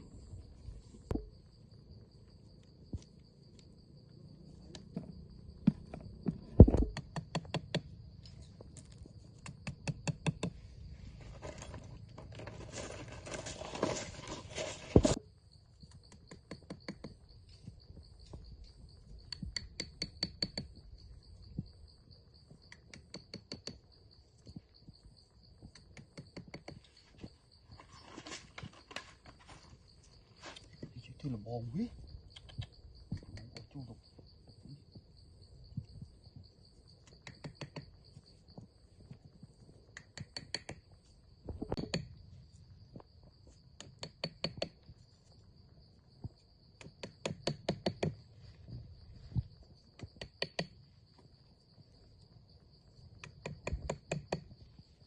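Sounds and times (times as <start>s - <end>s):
high insect drone: 0.0s - 55.0s
rustling: 10.8s - 15.2s, 27.0s - 30.9s.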